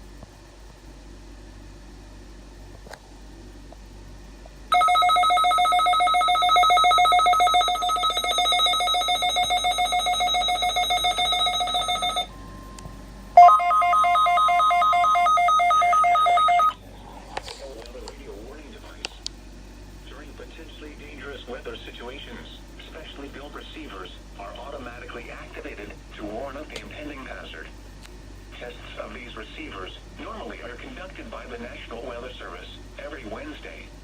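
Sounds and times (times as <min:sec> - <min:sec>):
rapidly pulsing alarm beep: 0:04.7 - 0:16.8
warbling alarm tone: 0:04.7 - 0:16.8
faint steady tone: 0:04.7 - 0:17.2.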